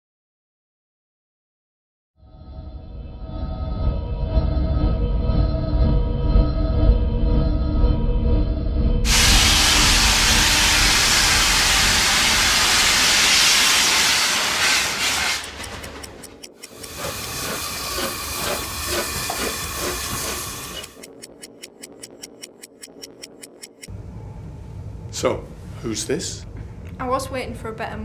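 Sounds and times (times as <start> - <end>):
steam locomotive hissing steam: 9.1 - 16.1, 16.8 - 20.9
fast regular ticking: 15.0 - 23.9.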